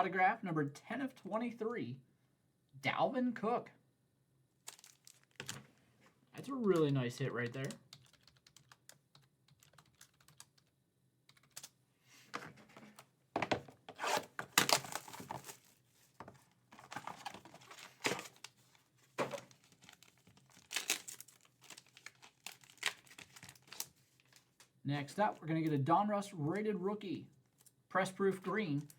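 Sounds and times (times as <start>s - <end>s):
plastic card sleeves crinkling: 4.6s - 5.7s, 16.8s - 25.9s.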